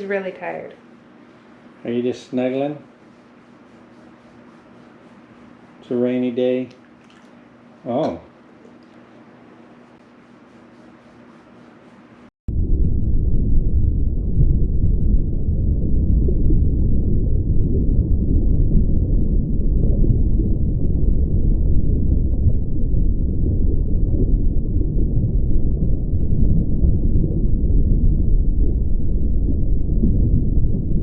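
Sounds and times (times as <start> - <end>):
loud low rumbling: 12.5 - 31.0.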